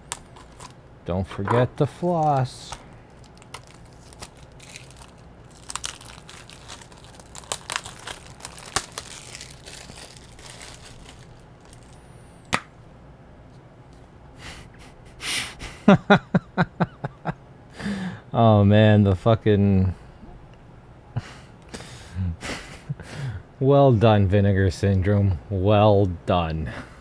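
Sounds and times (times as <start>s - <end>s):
plastic packaging crinkling: 0.0s - 12.1s.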